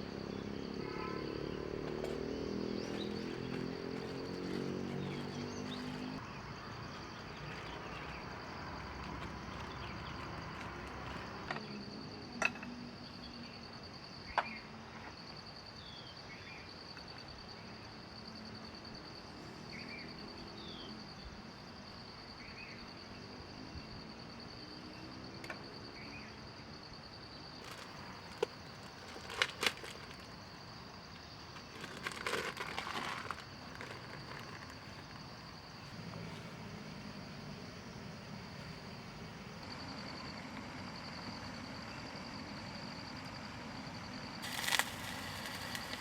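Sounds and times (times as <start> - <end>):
handling rustling: 2.8 - 6.2, 27.6 - 30.4, 31.6 - 35.3
high-pitched insect drone: 36.9 - 46.0.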